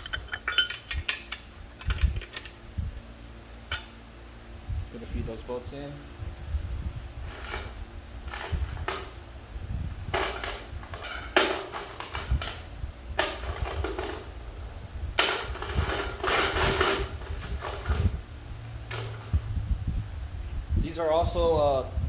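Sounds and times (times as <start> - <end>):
metal bolts clinking and scraping: 0.0 - 2.6, 3.7 - 4.0, 7.2 - 9.3, 10.1 - 14.3, 15.2 - 18.2, 18.8 - 19.4.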